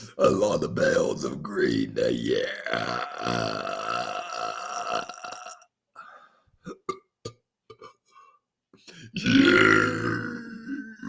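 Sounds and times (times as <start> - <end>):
man belching: 0.0 - 5.7, 9.2 - 11.0.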